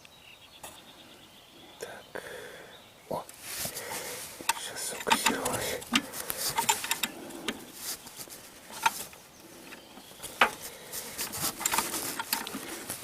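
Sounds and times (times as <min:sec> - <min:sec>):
wrench metal clicks and taps: 0:04.5 - 0:07.6.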